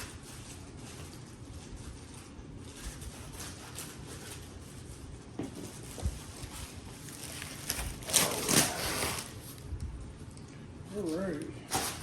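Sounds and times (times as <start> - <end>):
packing material rustling: 5.6 - 9.7.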